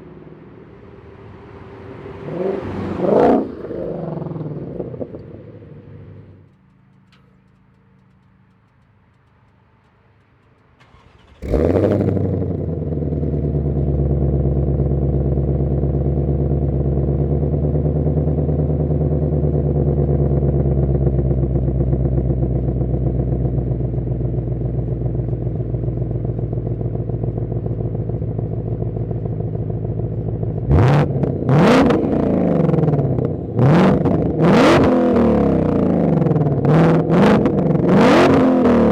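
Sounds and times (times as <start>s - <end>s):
engine revving: 1.4s - 6.4s, 10.8s - 23.6s, 26.2s - 38.9s
engine idling: 4.3s - 38.2s
engine starting with loud bark: 10.8s - 12.3s
car engine cutting off: 10.8s - 38.9s.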